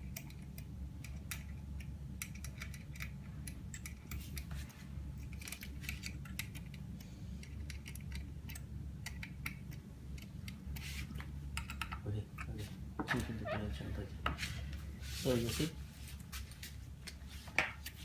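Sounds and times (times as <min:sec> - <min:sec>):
metal parts clicking: 0:02.2 - 0:04.5.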